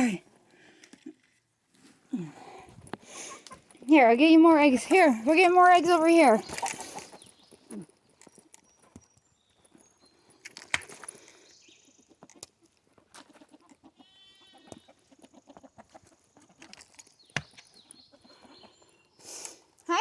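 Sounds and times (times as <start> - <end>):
hens clucking: 3.0 - 7.8, 11.8 - 16.9.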